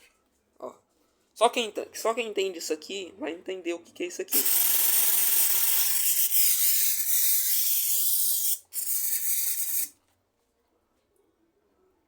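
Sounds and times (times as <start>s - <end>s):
pressure sprayer spraying water: 4.4s - 7.2s.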